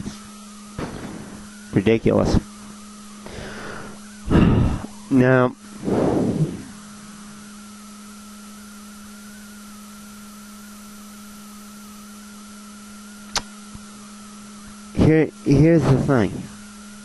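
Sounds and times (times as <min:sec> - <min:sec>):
electrical hum: 0:00.0 - 0:17.0
faint wavering high whine: 0:00.0 - 0:17.0
sharp click: 0:13.3 - 0:13.8.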